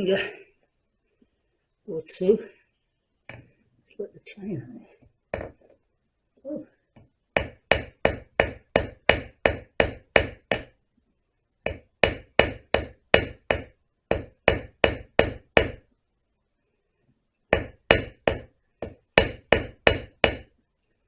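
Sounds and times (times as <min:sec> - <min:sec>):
hammer tapping on metal: 0:07.0 - 0:10.8, 0:11.6 - 0:15.8.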